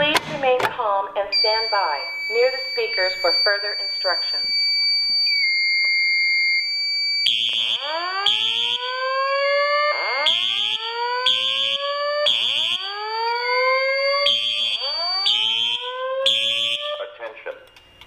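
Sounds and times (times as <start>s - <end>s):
alarm horn pulses: 1.3s - 4.9s
fire alarm rising whoop: 1.4s - 17.0s.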